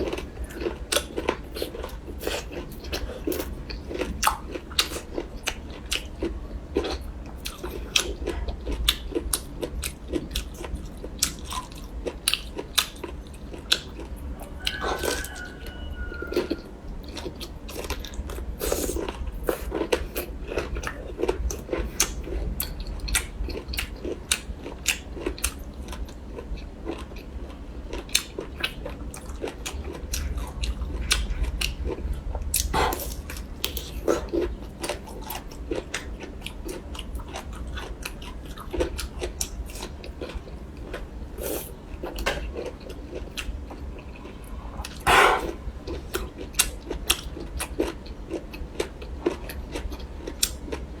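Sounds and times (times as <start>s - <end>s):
person chewing crunchy food: 0.0s - 51.0s
steady low hum: 0.0s - 51.0s.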